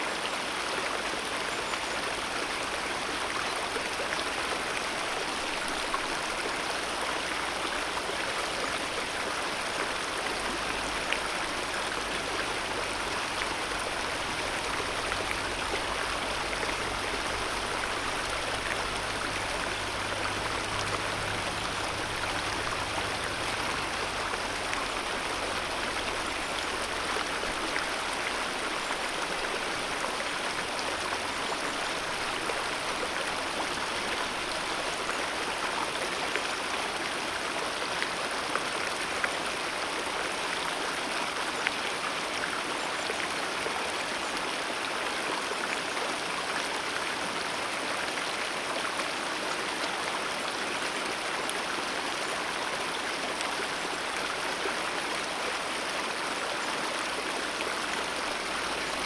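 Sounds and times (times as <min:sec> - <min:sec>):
river rushing over rocks: 0:00.0 - 0:59.0
water splashes and gurgles: 0:07.6 - 0:40.0.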